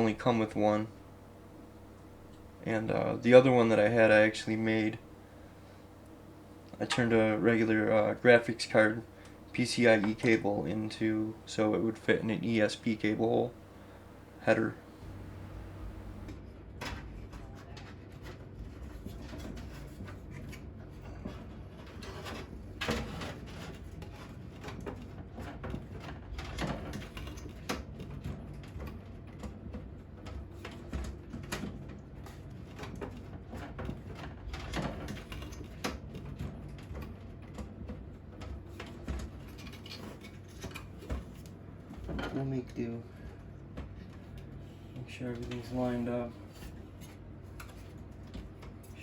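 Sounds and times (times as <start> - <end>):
steady low hum: 0.0 - 16.7.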